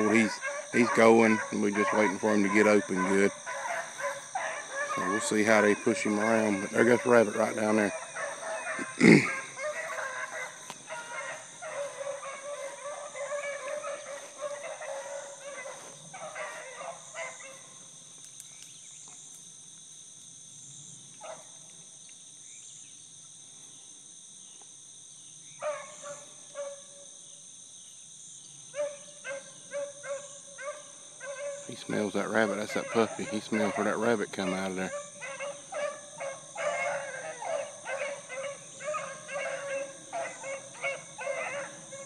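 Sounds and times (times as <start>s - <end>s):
dogs baying: 0.0s - 17.9s, 25.6s - 26.8s, 28.8s - 42.0s.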